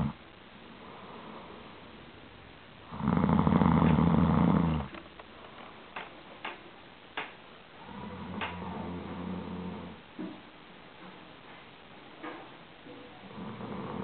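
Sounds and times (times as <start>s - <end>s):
quiet breathing: 0.0s - 2.2s
loud rough snore: 2.9s - 4.9s, 7.8s - 10.0s, 13.3s - 14.0s.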